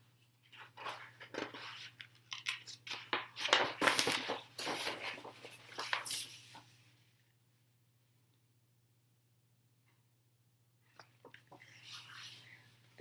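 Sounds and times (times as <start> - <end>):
low electrical hum: 0.0 - 13.0
book pages rustling and turning: 0.4 - 6.7.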